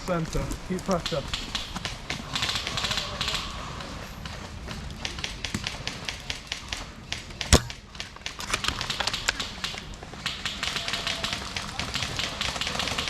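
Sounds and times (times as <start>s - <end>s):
airsoft gunfire clicks: 1.0s - 4.0s, 4.9s - 13.0s
loud sharp crack: 5.2s - 13.0s.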